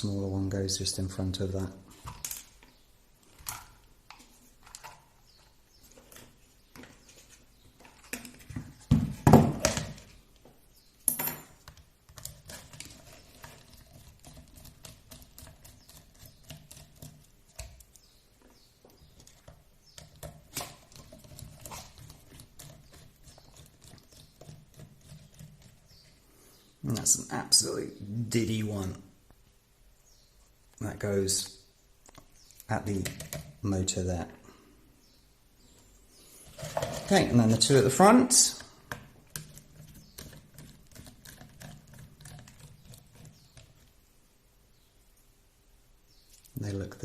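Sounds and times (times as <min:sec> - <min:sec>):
parts clattering: 0:36.4 - 0:42.6.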